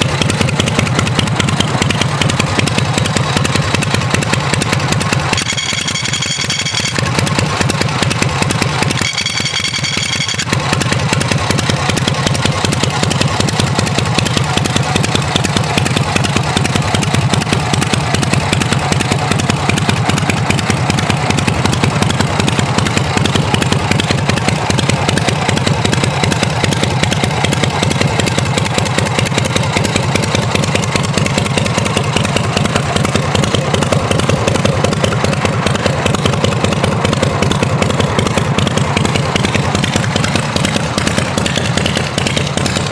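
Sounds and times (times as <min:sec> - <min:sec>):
motorcycle engine running: 0:00.0 - 0:42.9
high-pitched tone: 0:05.4 - 0:07.2, 0:08.9 - 0:10.5.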